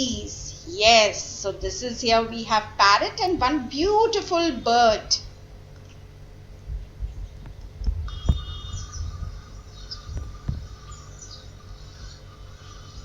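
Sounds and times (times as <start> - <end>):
low thumps: 6.6 - 11.0
recorded bird calls: 8.1 - 13.0.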